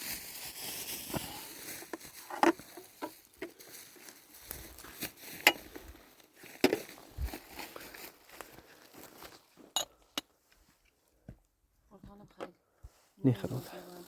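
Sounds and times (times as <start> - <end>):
rustling: 0.0 - 9.5.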